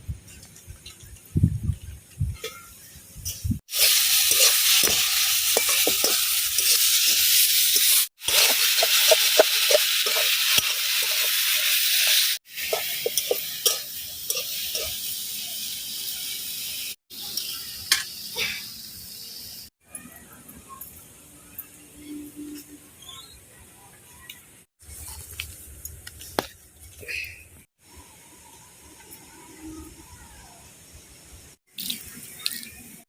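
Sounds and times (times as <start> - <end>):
food sizzling in hot oil: 2.3 - 19.7, 31.5 - 33.0
spatula scraping pan: 7.8 - 14.9.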